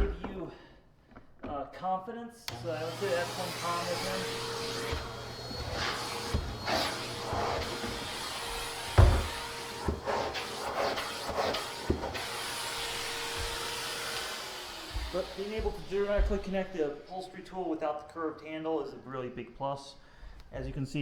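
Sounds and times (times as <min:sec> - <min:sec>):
vacuum tool thumping on stairs: 0:02.5 - 0:16.8
vacuum cleaner running: 0:02.5 - 0:17.1.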